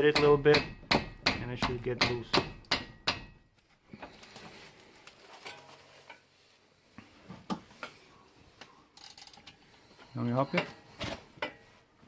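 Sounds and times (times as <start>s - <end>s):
hammer hitting a wrench: 0.0s - 3.4s.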